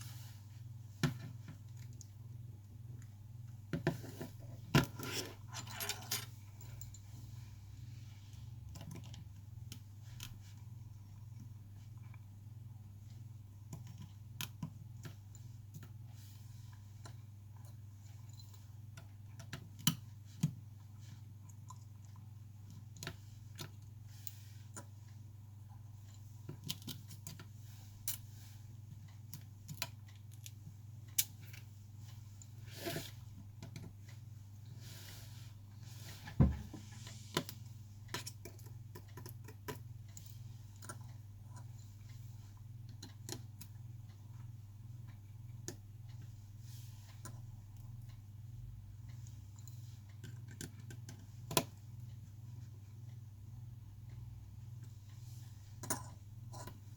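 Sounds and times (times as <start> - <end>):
low steady hum: 0.0 - 56.9
knock: 36.4 - 36.8.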